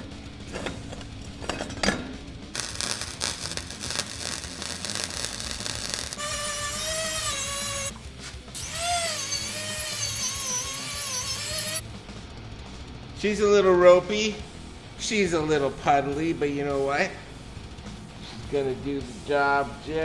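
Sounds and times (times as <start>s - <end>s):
welding crackle: 2.5s - 11.8s
power tool whining: 2.6s - 11.8s.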